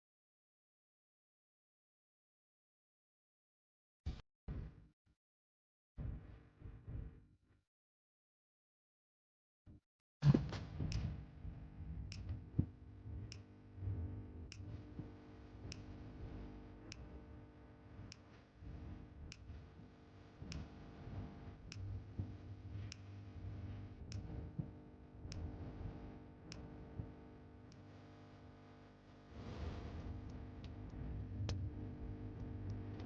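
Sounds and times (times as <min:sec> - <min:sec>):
light tick: 0:12.1 - 0:12.7, 0:13.3 - 0:13.6, 0:14.5 - 0:17.4, 0:18.1 - 0:18.4, 0:20.4 - 0:20.7, 0:24.1 - 0:24.7, 0:25.3 - 0:27.1, 0:32.4 - 0:33.0.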